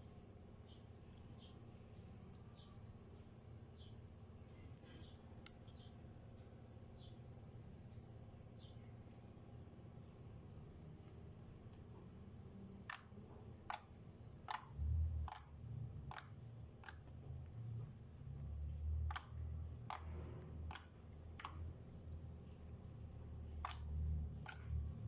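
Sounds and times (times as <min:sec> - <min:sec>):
slime clicking pops: 0:14.5 - 0:14.7.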